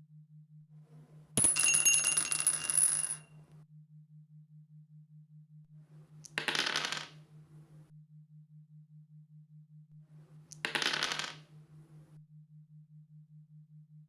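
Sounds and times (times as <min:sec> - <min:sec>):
dice clattering: 0:01.4 - 0:03.2, 0:06.4 - 0:07.2, 0:10.6 - 0:11.4.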